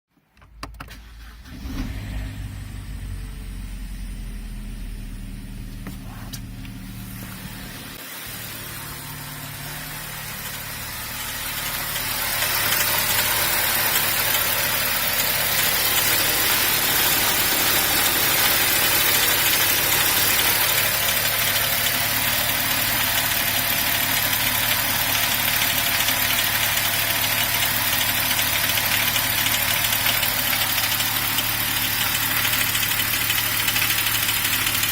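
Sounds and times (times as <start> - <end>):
car engine clattering: 0.3 - 34.9
high-pitched hiss and rattle: 5.6 - 25.9.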